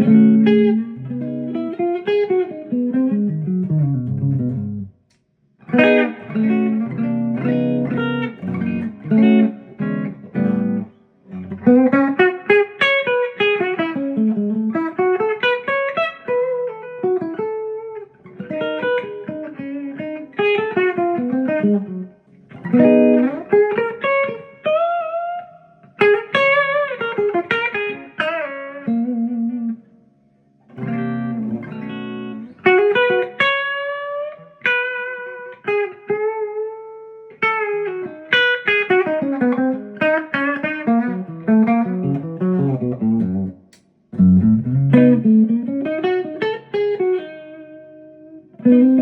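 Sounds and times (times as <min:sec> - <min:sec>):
electric guitar playing: 0:00.0 - 0:49.0.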